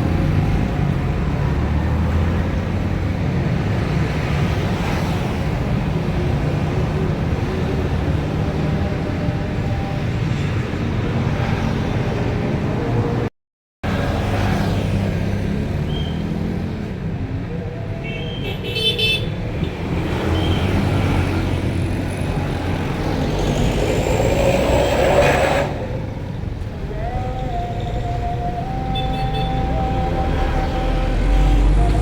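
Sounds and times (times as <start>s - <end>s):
bus engine and road noise: 0.0s - 32.0s
musical multi-tone bus horn: 27.8s - 32.0s
steady horn tone: 28.8s - 32.0s.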